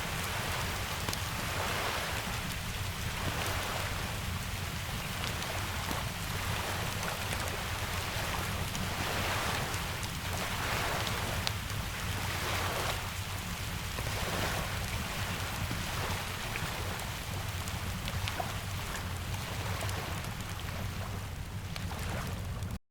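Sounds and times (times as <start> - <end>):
ocean surf: 0.0 - 22.7
steady rain: 0.0 - 22.8
wood fire crackling: 0.0 - 22.8.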